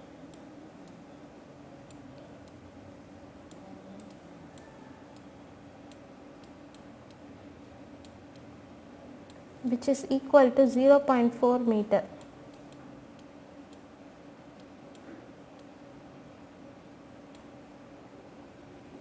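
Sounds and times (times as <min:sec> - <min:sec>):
low steady hum: 0:00.0 - 0:19.0
faint irregular clicks: 0:03.4 - 0:07.3, 0:12.1 - 0:13.9, 0:17.3 - 0:17.6.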